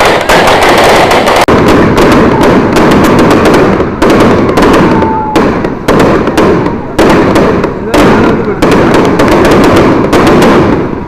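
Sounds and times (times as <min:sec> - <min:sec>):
firework whistle: 0:00.0 - 0:05.9
fireworks and firecrackers banging: 0:00.0 - 0:11.0.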